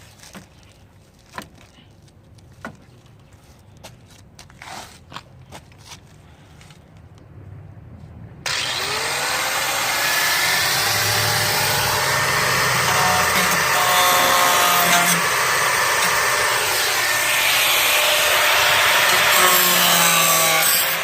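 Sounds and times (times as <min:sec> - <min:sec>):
power tool whining: 0:08.5 - 0:21.0.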